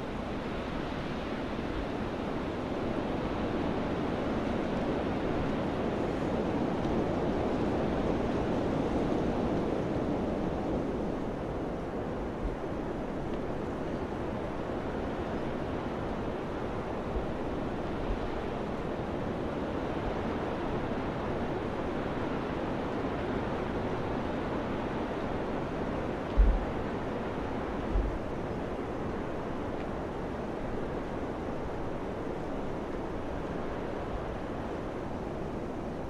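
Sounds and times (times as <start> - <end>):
rushing wind: 0.0 - 36.0
soft low thumps: 26.4 - 26.7.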